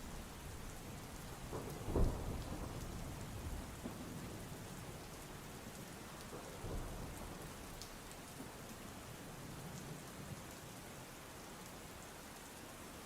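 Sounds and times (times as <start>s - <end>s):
steady rain: 0.0s - 13.0s
low rumble of thunder: 0.1s - 5.2s, 6.2s - 7.7s.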